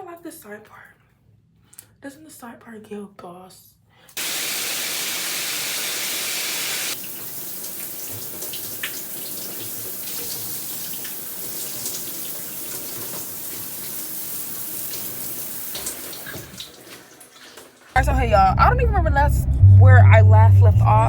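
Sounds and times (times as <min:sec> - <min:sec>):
water running: 0:04.2 - 0:19.1
small splashes and knocks: 0:15.7 - 0:18.0.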